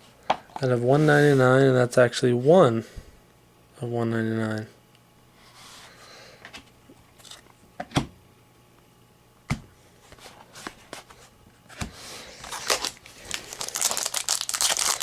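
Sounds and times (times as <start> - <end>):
rustling of card stock: 10.0 - 15.0.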